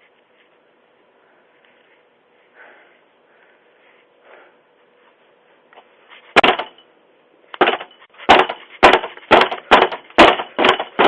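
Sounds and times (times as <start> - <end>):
heavy blows on a door: 7.6 - 11.0.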